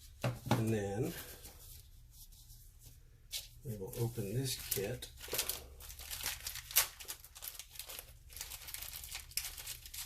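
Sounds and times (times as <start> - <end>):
packaging crinkling and tearing: 4.5 - 10.0.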